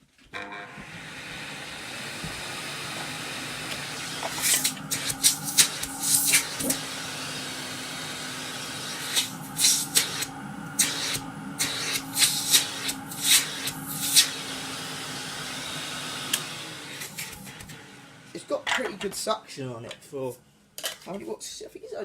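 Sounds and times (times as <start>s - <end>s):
vacuum cleaner motor hum: 0.4s - 18.6s
air hissing at hose: 3.9s - 17.7s.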